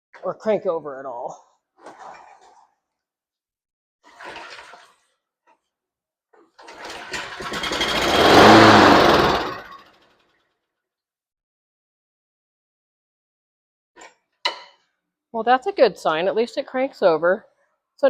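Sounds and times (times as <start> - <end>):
lawn mower engine starting: 6.6 - 10.2.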